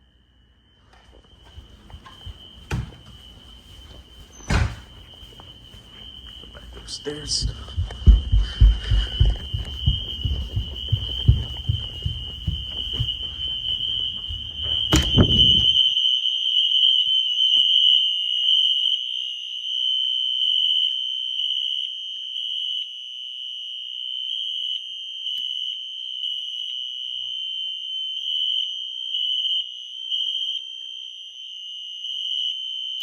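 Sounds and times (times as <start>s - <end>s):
fire alarm horn tone: 0.4s - 33.0s
footsteps on stairs: 1.1s - 15.9s
sharp knock: 14.9s - 15.8s.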